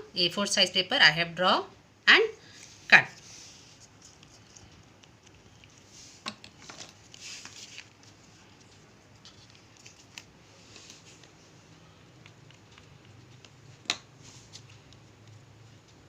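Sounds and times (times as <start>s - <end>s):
paper rustling: 2.5s - 11.4s.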